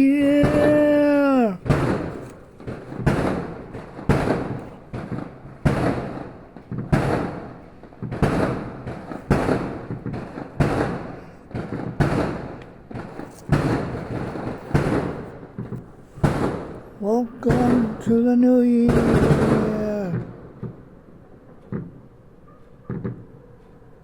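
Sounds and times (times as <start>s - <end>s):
fireworks bangs: 0.0s - 22.0s
small firework pops: 0.4s - 16.8s, 22.9s - 23.3s.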